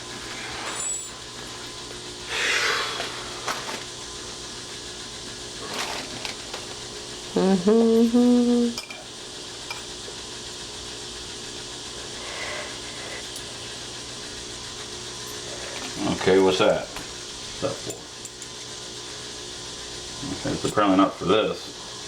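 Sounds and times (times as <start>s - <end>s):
person humming: 7.3s - 8.8s.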